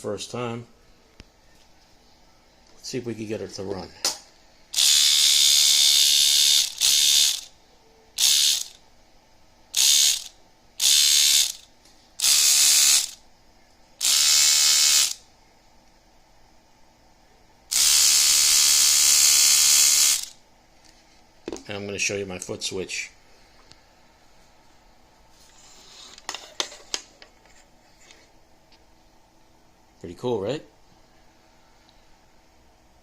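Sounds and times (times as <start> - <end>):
tattoo machine buzzing: 4.7 - 8.8, 9.7 - 13.2, 14.0 - 15.3, 17.7 - 20.4.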